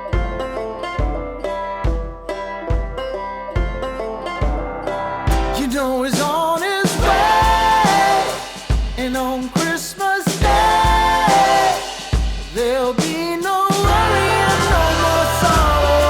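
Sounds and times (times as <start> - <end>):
pop song with singer: 5.4 - 16.0.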